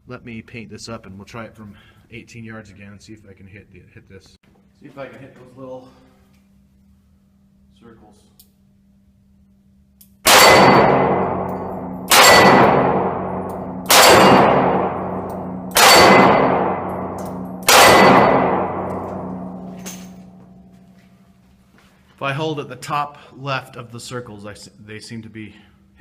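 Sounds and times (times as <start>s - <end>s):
steel target clanging: 10.3s - 20.8s.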